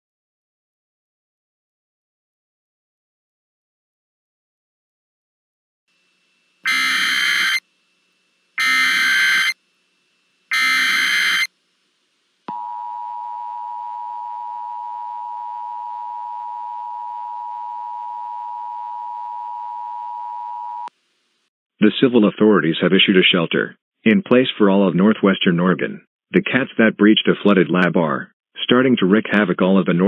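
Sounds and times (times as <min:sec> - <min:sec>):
harsh data bursts: 0:06.6 - 0:07.6, 0:08.6 - 0:09.6, 0:10.5 - 0:11.5
two-tone attention signal: 0:06.7 - 0:07.6, 0:08.6 - 0:09.6, 0:10.5 - 0:11.5.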